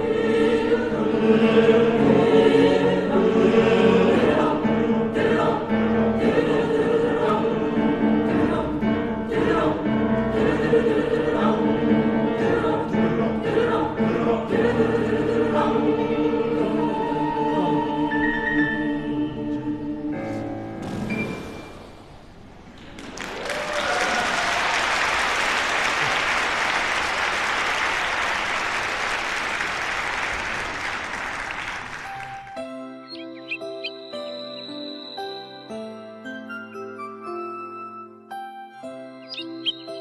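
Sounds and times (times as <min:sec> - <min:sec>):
youth choir singing in harmony: 0:00.0 - 0:20.5.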